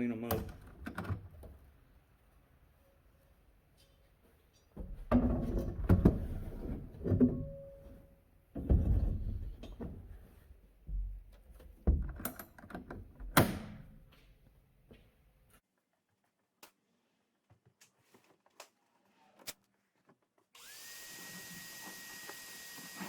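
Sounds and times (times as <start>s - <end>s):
heavy knocks and clunks: 8.6s - 10.1s.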